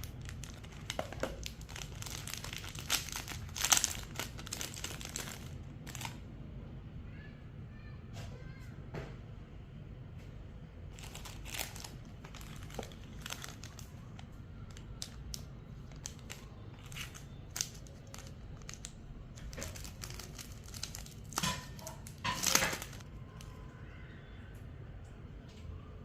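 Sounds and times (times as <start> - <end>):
packaging crinkling and rustling: 0.0 - 6.2, 10.9 - 23.6
packaging tearing: 0.0 - 6.2, 11.0 - 23.6.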